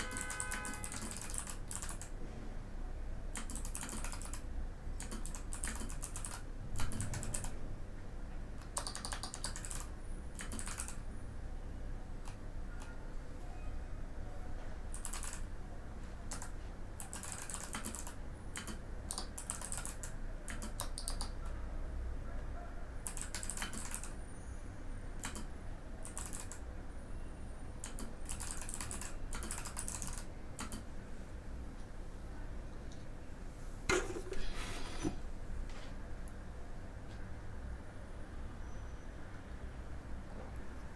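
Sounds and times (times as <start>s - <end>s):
mechanical keyboard typing: 0.0s - 2.2s, 3.3s - 7.6s, 8.6s - 11.0s, 14.9s - 15.5s, 16.3s - 21.4s, 23.0s - 24.2s, 25.2s - 26.6s, 27.8s - 30.8s.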